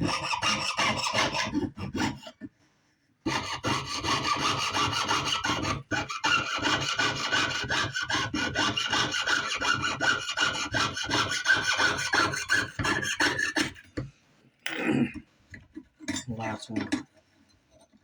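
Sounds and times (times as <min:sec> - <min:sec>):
jeweler's saw cutting: 0:00.0 - 0:02.4, 0:03.3 - 0:13.8.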